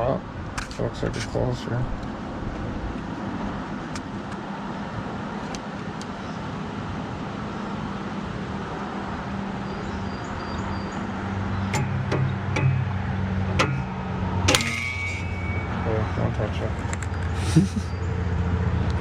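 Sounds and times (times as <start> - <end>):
metal knocks: 11.7 - 16.2.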